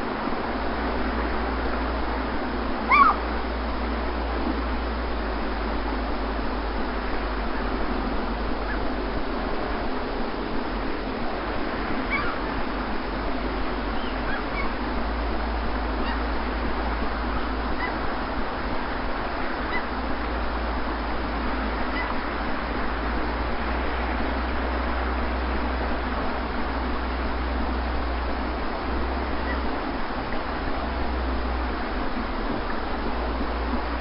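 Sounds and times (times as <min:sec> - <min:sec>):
sea waves washing: 0:00.0 - 0:34.0
faint bird calls: 0:02.8 - 0:03.3, 0:08.6 - 0:08.9, 0:12.0 - 0:12.6, 0:13.8 - 0:18.2, 0:19.4 - 0:20.0, 0:21.8 - 0:22.4, 0:29.2 - 0:29.8.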